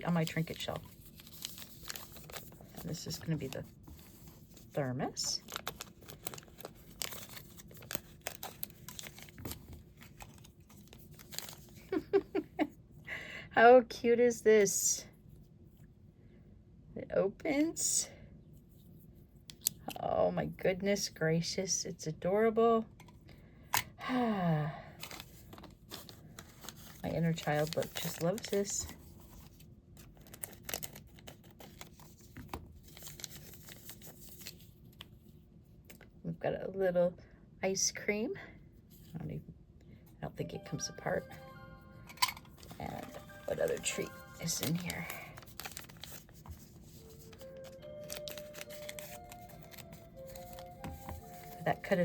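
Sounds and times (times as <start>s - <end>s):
packaging crinkling and tearing: 0.1s - 12.0s, 25.0s - 35.1s, 42.5s - 52.0s.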